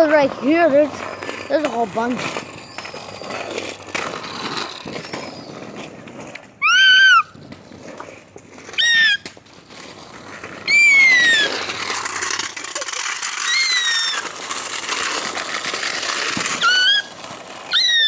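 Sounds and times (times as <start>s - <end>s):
animal whining calls: 6.6s - 7.3s, 8.7s - 9.2s, 17.7s - 18.0s.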